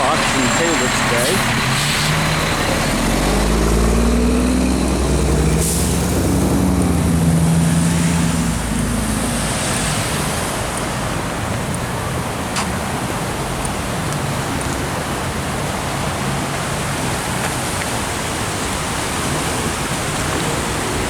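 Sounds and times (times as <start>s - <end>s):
vehicle engine passing by: 0.0s - 11.2s
traffic noise: 0.0s - 21.0s.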